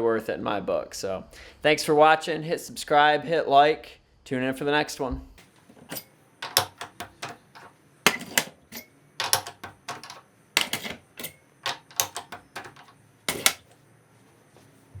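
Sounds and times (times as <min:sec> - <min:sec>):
sharp clicks and knocks: 0:05.4 - 0:13.8.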